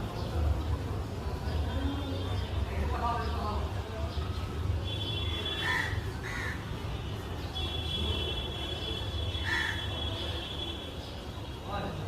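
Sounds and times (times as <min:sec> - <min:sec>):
crows cawing: 0:05.6 - 0:06.6, 0:09.4 - 0:09.9.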